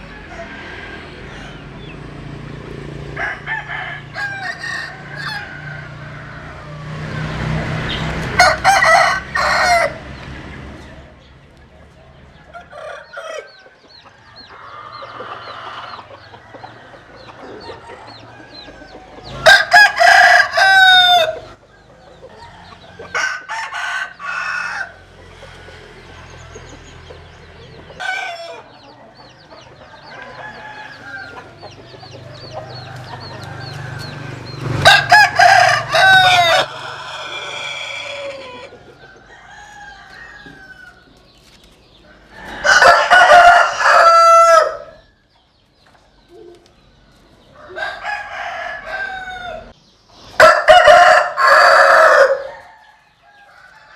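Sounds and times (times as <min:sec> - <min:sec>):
rooster crowing: 0:00.0 - 0:01.8, 0:03.1 - 0:07.4, 0:08.3 - 0:10.1, 0:12.4 - 0:13.7, 0:14.3 - 0:26.0, 0:28.0 - 0:29.0, 0:29.8 - 0:41.1, 0:42.1 - 0:45.2, 0:47.6 - 0:49.8, 0:50.4 - 0:53.9
chicken calls: 0:00.0 - 0:53.9.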